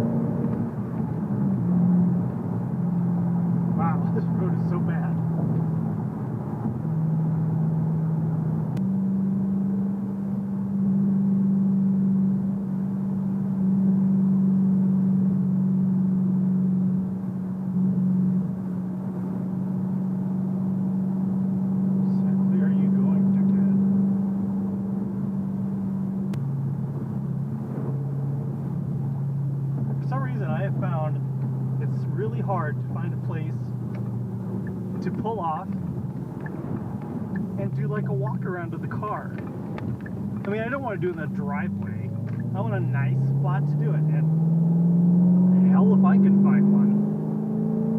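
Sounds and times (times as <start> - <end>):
car exhaust drone: 0.0 - 47.9.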